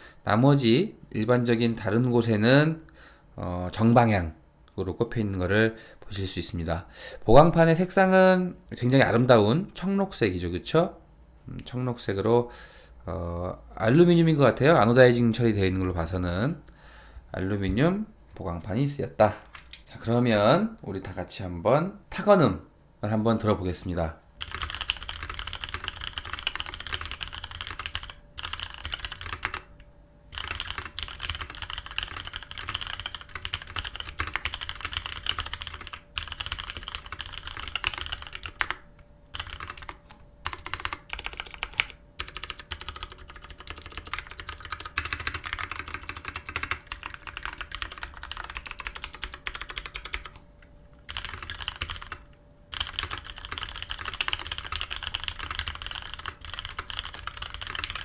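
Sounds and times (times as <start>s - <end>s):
mechanical keyboard typing: 24.4s - 29.7s, 30.3s - 50.4s, 51.1s - 58.0s.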